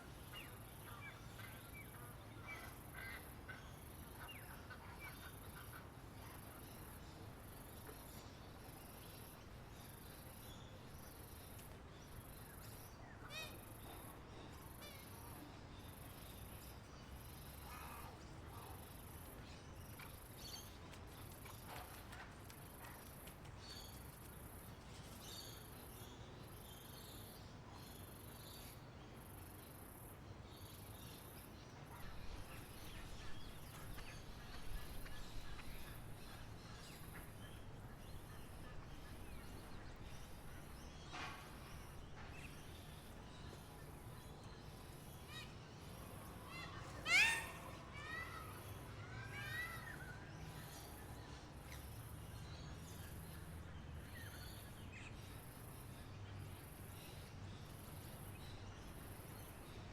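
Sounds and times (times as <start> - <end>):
birds chirping: 31.2 - 50.1
insect pulsing call: 47.0 - 47.7.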